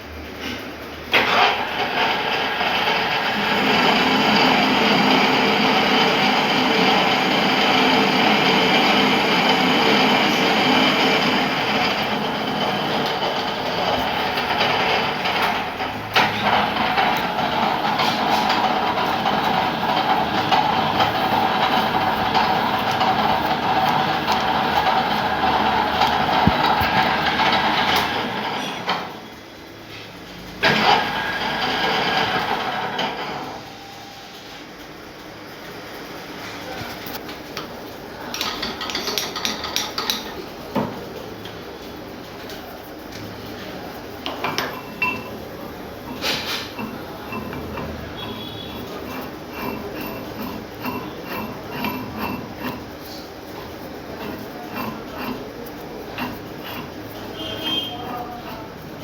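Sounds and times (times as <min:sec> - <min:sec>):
lathe running: 0:01.1 - 0:29.3, 0:30.6 - 0:33.9, 0:44.2 - 0:59.0.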